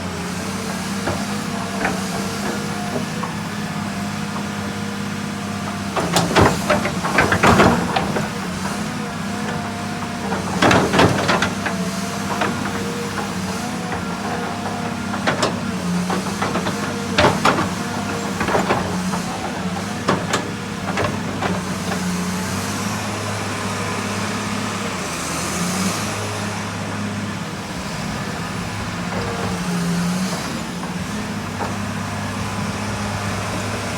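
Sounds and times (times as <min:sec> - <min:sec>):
excavator diesel engine running: 0:00.0 - 0:33.9
metallic clanks and rattles: 0:00.4 - 0:22.4, 0:27.9 - 0:33.0.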